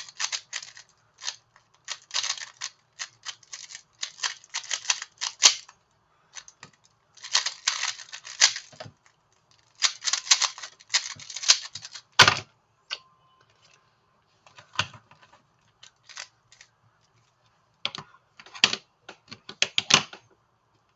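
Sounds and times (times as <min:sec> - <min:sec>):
faint short steady tone: 0:12.8 - 0:14.2.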